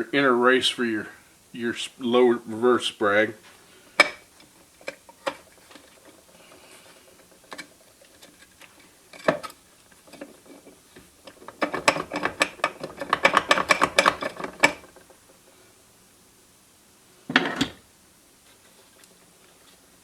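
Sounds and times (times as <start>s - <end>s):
metal parts knock: 11.2s - 15.1s.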